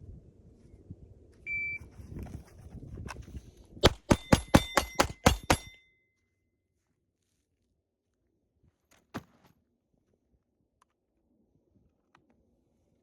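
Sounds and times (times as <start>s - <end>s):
rapid revolver shots: 3.8s - 5.7s.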